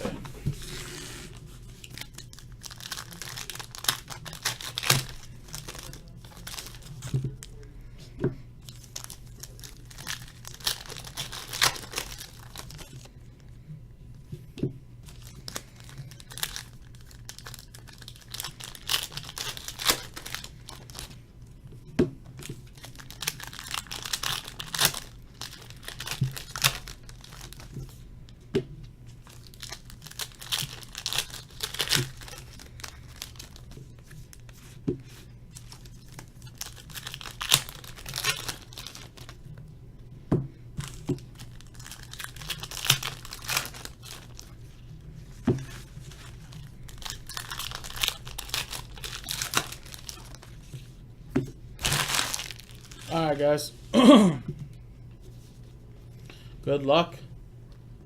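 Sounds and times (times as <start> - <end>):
plastic wrapping tearing and crinkling: 0.0 - 7.6, 8.6 - 13.1, 15.0 - 21.2, 22.4 - 28.0, 29.2 - 39.6, 40.8 - 50.9, 51.8 - 53.5
low steady hum: 0.0 - 58.0.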